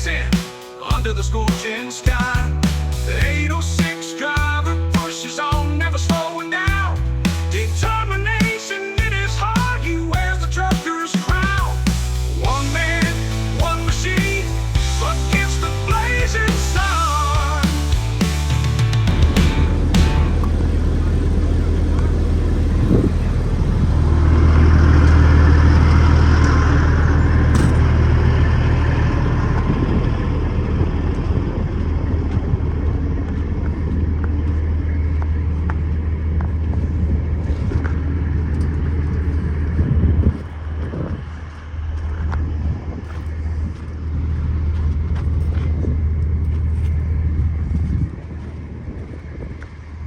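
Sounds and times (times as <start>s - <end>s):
road noise: 0.0s - 50.0s
truck engine drone: 0.0s - 50.0s.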